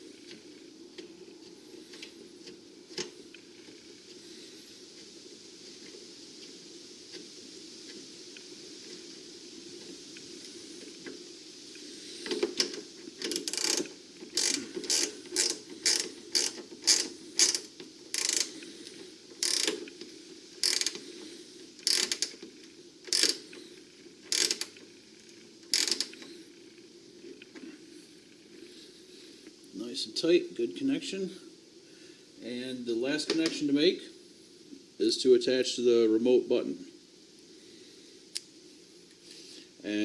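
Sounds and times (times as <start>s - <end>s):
ratchet wrench clicking: 13.2s - 18.6s, 19.4s - 19.8s, 20.6s - 21.0s, 21.8s - 22.4s, 23.1s - 23.4s, 24.3s - 24.7s, 25.7s - 26.2s.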